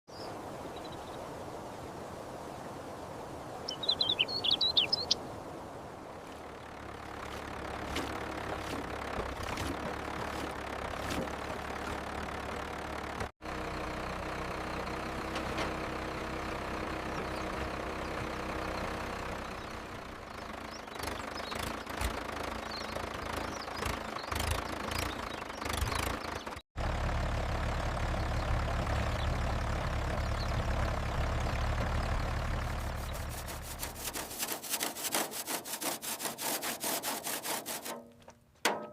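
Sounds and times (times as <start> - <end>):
bird chirps: 3.7 - 5.2, 17.0 - 26.6
deep engine rumble: 6.0 - 34.9
heavy engine running: 6.3 - 36.8
metallic knocks and clanks: 37.9 - 38.9.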